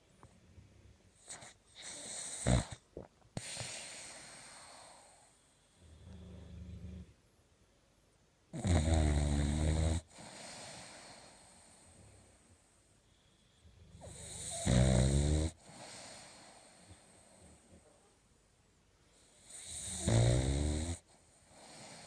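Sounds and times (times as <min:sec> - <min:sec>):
soft breathy sound: 0:00.0 - 0:07.8, 0:09.7 - 0:20.1, 0:20.9 - 0:22.0
puppy snoring: 0:01.2 - 0:07.2, 0:08.5 - 0:12.4, 0:13.9 - 0:17.9, 0:19.2 - 0:22.0.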